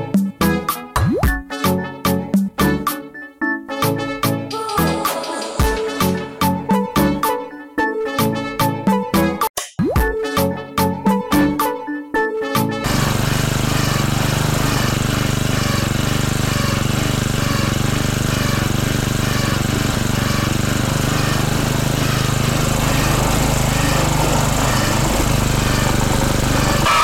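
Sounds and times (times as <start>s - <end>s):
small machine humming and chattering: 12.8s - 27.0s.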